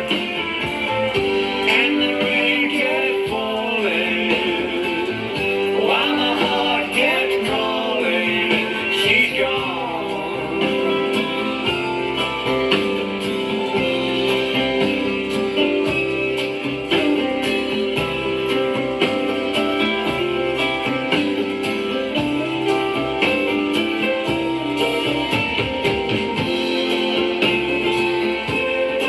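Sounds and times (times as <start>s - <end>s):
pop-rock guitar music: 0.0s - 29.0s
record surface noise: 0.0s - 29.0s.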